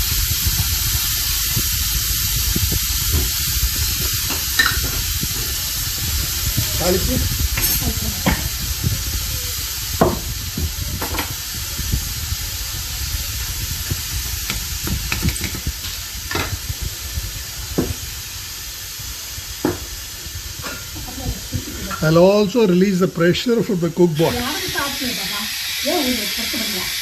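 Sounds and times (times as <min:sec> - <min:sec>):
sizzling in hot oil: 0:00.0 - 0:27.0.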